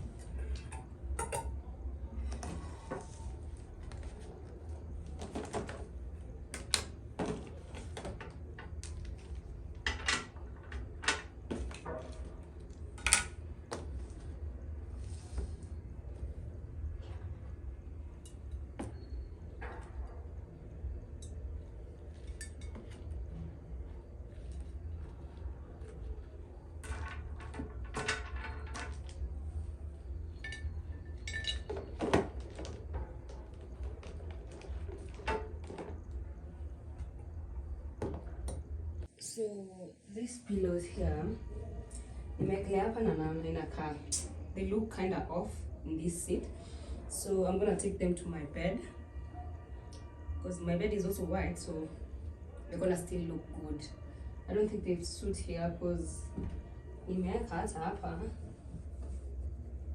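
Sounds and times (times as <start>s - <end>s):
steady low hum: 0.0s - 59.9s
dishes clinking: 0.6s - 1.6s, 22.2s - 23.0s, 30.4s - 32.0s.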